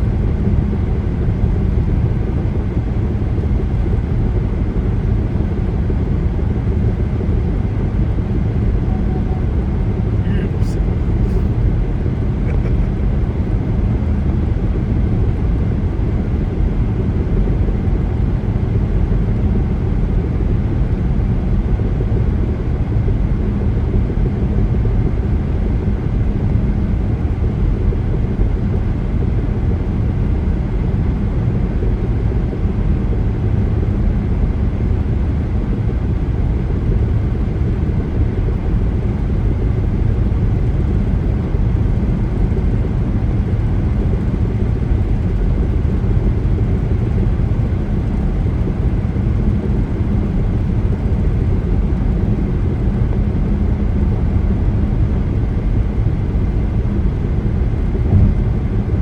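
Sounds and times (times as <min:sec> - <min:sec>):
car driving at highway speed: 0:58.1 - 0:58.8.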